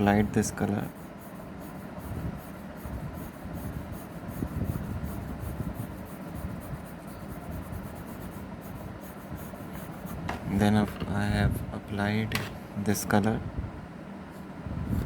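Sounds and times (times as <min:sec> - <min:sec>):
coloring stick rubbing on paper: 0:00.0 - 0:11.0.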